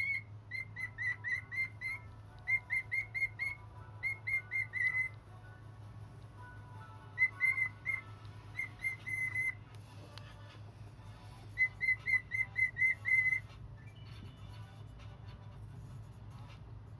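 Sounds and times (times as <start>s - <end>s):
cockatiel whistling high notes: 0.0s - 5.2s, 7.1s - 9.6s, 11.5s - 14.0s.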